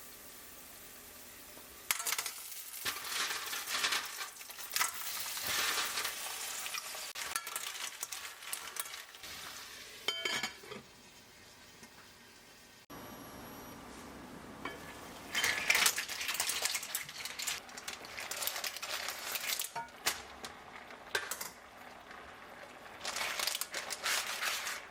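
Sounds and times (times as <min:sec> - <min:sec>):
food sizzling in a hot pan: 0:00.0 - 0:12.7
utensils clinking against pan: 0:01.9 - 0:09.2, 0:10.0 - 0:10.8, 0:14.6 - 0:21.7, 0:23.0 - 0:24.9.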